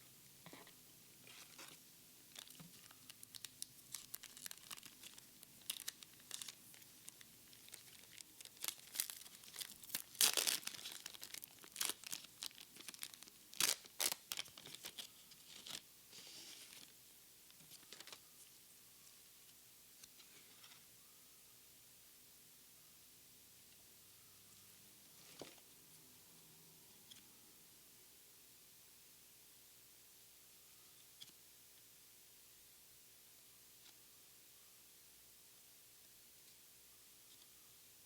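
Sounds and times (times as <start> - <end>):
foil wrapper crinkling and tearing: 2.3 - 15.8.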